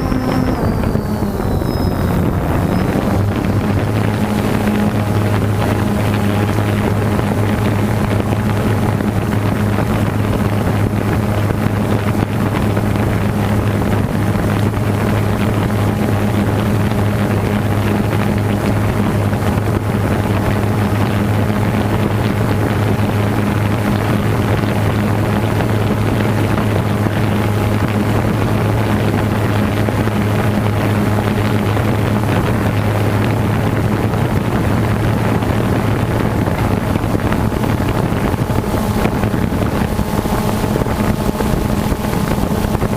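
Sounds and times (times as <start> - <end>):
drone propellers humming: 0.0 - 42.9
wind noise on microphone: 0.0 - 42.9.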